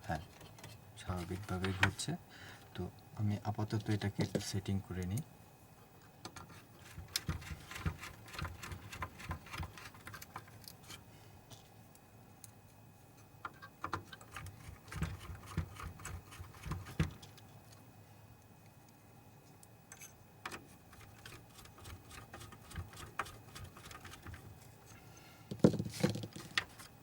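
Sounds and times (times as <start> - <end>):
small parts clicking and tapping: 6.2 - 12.6.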